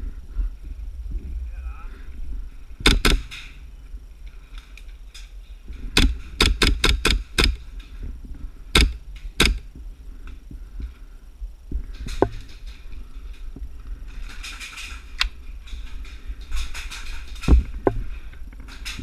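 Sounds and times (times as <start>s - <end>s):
airsoft gun shots: 2.8s - 3.5s, 6.0s - 7.6s, 8.8s - 9.6s.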